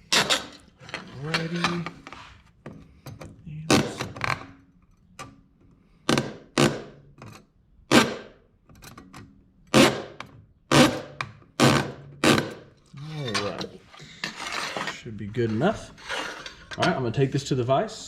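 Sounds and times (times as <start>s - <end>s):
hacksaw cutting steel plate: 0.0s - 2.0s, 7.9s - 8.3s, 9.7s - 12.6s, 13.2s - 17.0s.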